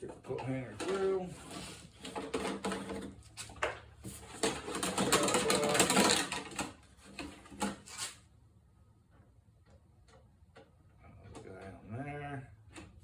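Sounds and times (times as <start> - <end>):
wire hanger scraping and rattling: 0.2 - 8.2.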